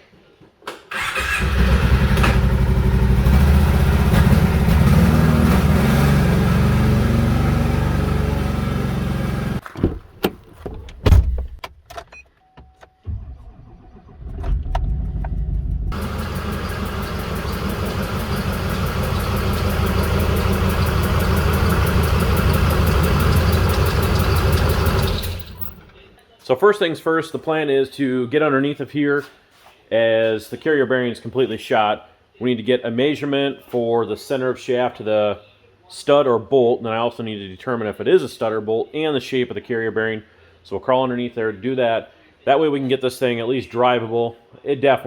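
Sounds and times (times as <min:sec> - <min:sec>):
diesel truck engine running: 0:01.4 - 0:09.6, 0:14.9 - 0:25.8
fast ticking: 0:15.9 - 0:25.7.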